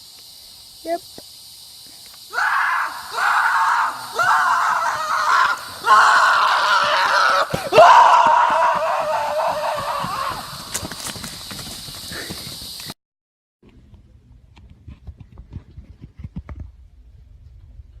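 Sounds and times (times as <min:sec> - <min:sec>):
person screaming in fright: 0:02.3 - 0:10.6
short breaths: 0:12.0 - 0:12.9.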